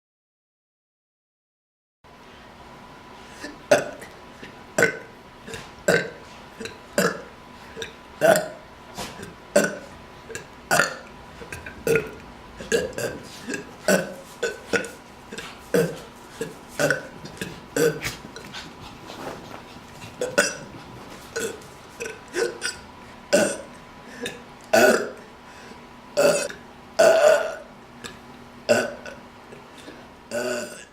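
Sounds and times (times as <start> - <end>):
person burping: 3.4 - 4.2, 4.8 - 8.6, 9.2 - 18.1, 20.2 - 20.7, 21.4 - 25.3, 26.2 - 27.7, 28.7 - 29.2, 30.3 - 30.9.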